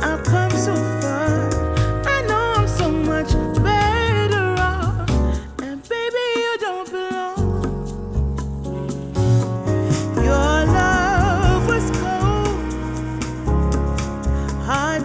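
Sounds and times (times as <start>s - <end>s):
bass line: 0.0s - 5.7s, 7.4s - 15.0s
gliding melodic lead: 7.4s - 15.0s.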